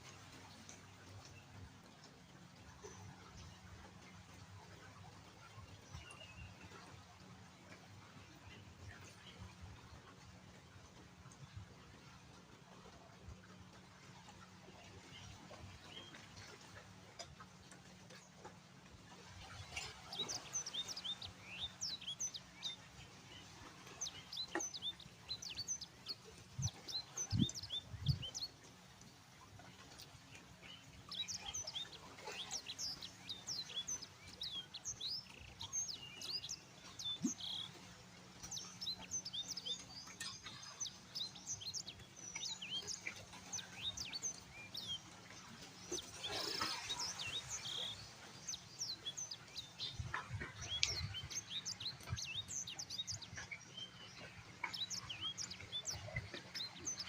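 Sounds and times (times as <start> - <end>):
birds chirping: 19.5 - 57.0.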